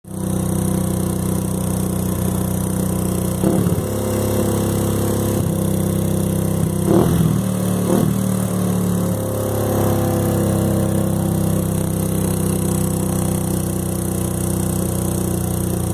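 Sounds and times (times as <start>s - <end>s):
motorcycle engine running: 0.0s - 15.9s.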